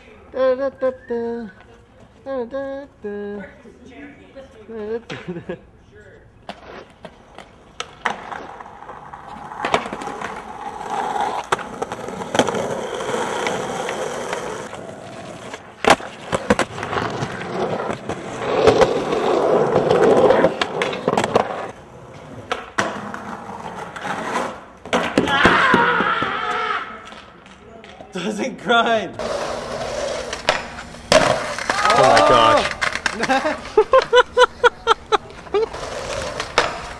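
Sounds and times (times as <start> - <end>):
skateboard wheels rolling: 6.3 - 28.2, 29.1 - 36.9
skateboard clacking on ground: 6.4 - 25.6, 27.0 - 28.2, 29.2 - 34.2, 35.2 - 36.9.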